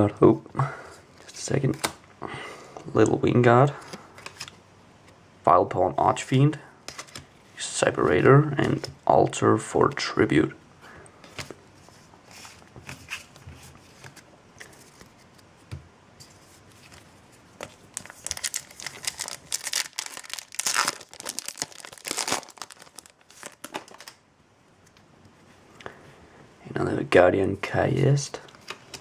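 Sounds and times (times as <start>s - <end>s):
foil wrapper crinkling and tearing: 17.9s - 24.2s.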